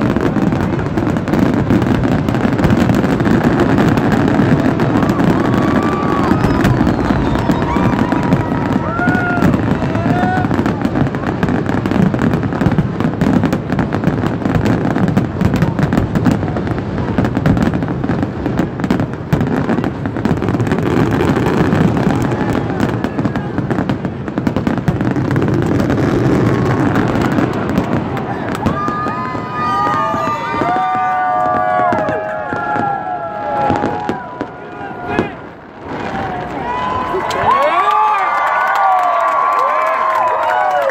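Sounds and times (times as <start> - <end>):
fireworks bursts and crackle: 0.0 - 40.9
firework whistles: 3.3 - 11.0.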